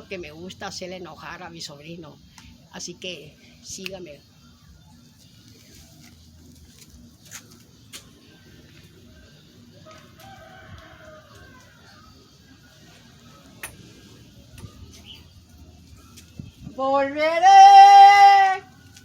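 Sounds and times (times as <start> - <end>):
man singing a long note: 16.8 - 18.7.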